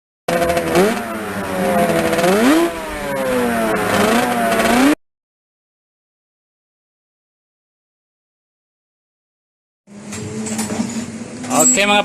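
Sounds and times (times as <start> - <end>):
engine revving: 0.3 - 5.0.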